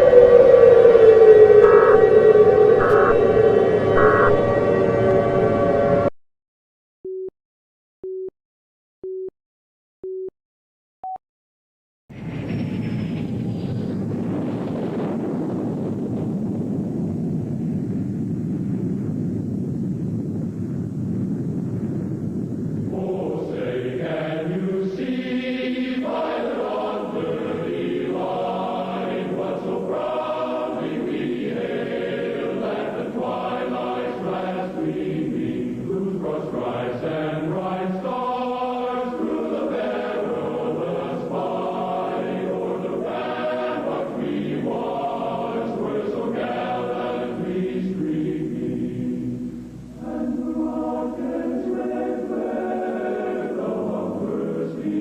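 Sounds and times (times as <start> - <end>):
choir singing: 0.0 - 6.1, 22.9 - 55.0
low rumbling: 12.1 - 24.1.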